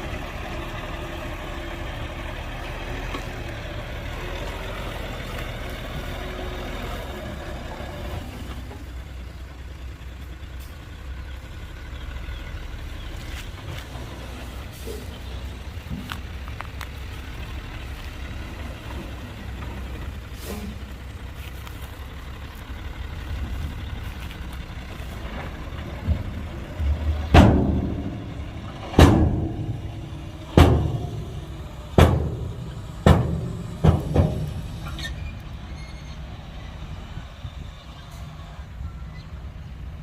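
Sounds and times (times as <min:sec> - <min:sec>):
heavy diesel machinery running: 0:00.0 - 0:40.0
loud bangs: 0:26.0 - 0:35.0.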